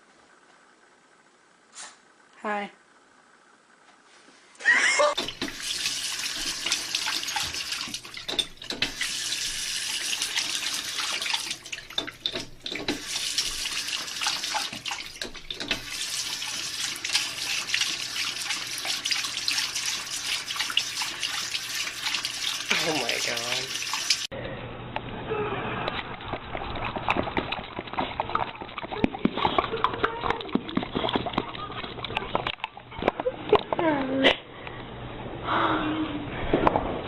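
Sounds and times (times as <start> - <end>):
water running from a tap: 5.2 - 24.3.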